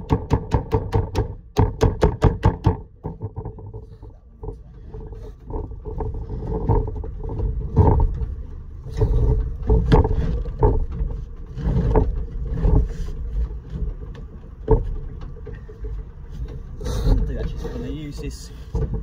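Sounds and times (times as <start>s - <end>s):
low rumble: 2.9s - 17.9s.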